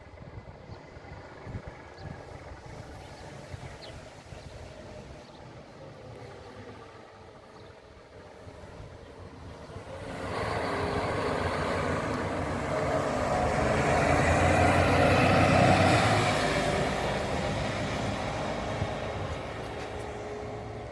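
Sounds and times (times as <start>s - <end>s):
vehicle passing: 9.4s - 20.9s.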